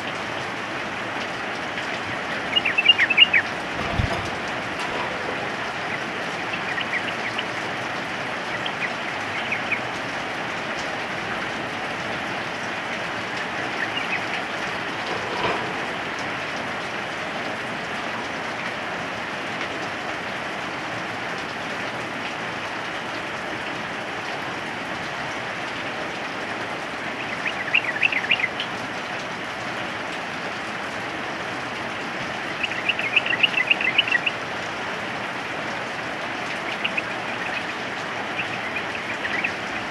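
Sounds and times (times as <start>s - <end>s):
rain hiss: 0.0s - 39.9s
bird bubbly chirping: 2.2s - 4.2s, 4.9s - 7.6s, 13.7s - 14.3s, 32.6s - 34.4s, 36.6s - 39.9s.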